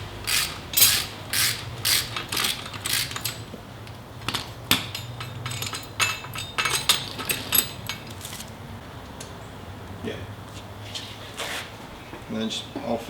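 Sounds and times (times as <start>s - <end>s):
tools and metal parts clinking: 0.2s - 8.5s.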